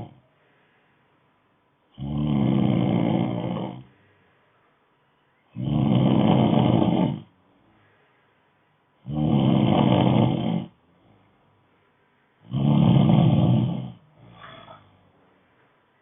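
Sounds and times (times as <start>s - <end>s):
loud low snores: 0.0s - 0.2s, 1.9s - 3.9s, 5.5s - 7.3s, 9.0s - 10.8s, 12.4s - 14.8s
faint breath: 0.2s - 1.3s, 3.8s - 4.9s, 7.5s - 8.8s.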